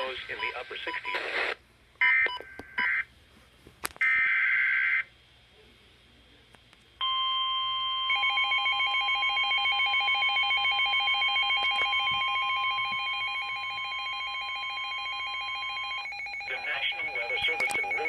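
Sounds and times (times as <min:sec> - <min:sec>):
piercing steady alarm tone: 0:07.0 - 0:18.0.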